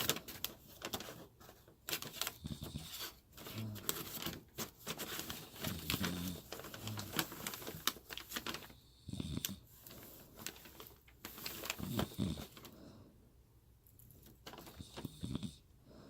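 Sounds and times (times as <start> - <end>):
woman snoring: 9.0 - 9.6, 14.8 - 15.6.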